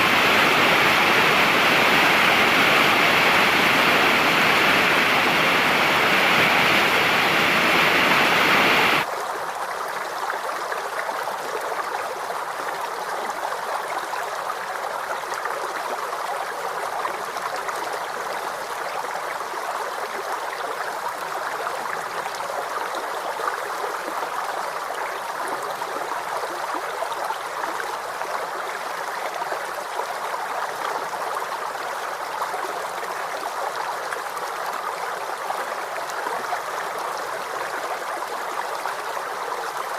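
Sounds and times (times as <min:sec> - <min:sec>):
waterfall rushing: 0:00.0 - 0:09.1
stream of flowing water: 0:00.0 - 0:39.9.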